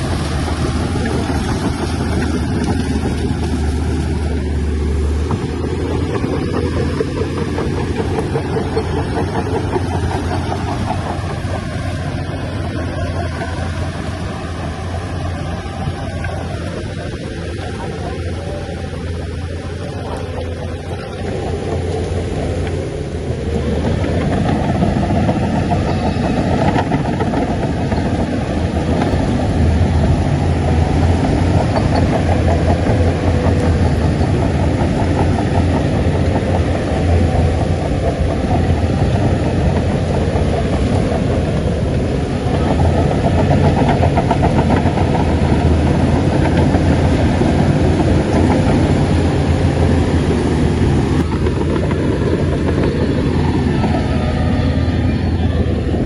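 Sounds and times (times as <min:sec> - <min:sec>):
heavy diesel engine running: 0:00.0 - 0:56.0.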